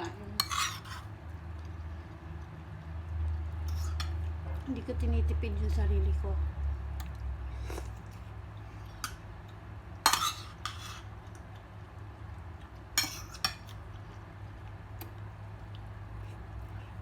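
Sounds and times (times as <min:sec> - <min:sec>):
low steady hum: 0:00.0 - 0:17.0
dishes and utensils clinking: 0:10.0 - 0:11.1, 0:13.0 - 0:13.8.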